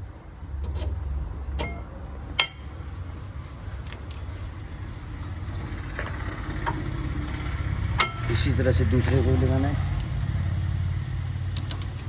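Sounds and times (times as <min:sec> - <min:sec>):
metal brake parts clinking: 0:00.6 - 0:02.7.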